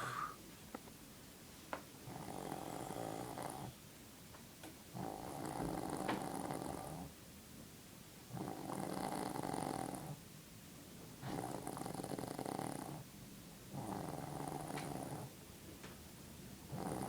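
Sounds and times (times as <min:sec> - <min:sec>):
woman snoring: 0:00.0 - 0:00.4, 0:02.1 - 0:03.7.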